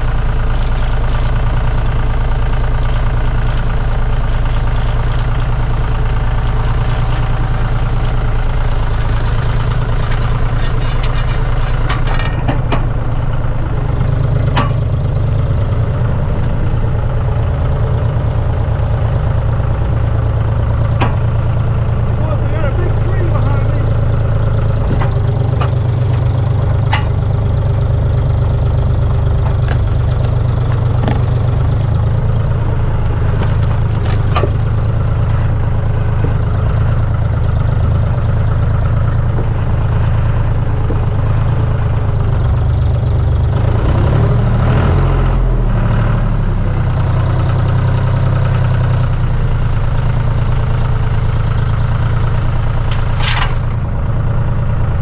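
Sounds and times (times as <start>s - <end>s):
tractor engine running: 0.0s - 55.0s
sharp clicks and knocks: 8.8s - 12.9s, 14.4s - 15.0s, 20.8s - 21.4s, 24.8s - 27.6s, 28.8s - 35.5s, 52.8s - 54.0s.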